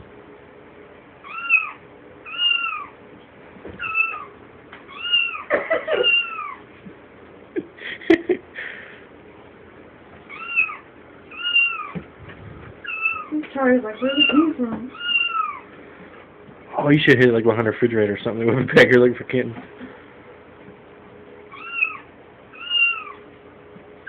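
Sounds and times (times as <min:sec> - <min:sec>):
cat meowing: 0:01.2 - 0:03.0, 0:03.8 - 0:06.6, 0:10.3 - 0:12.0, 0:12.8 - 0:13.4, 0:14.0 - 0:15.7, 0:21.5 - 0:23.2.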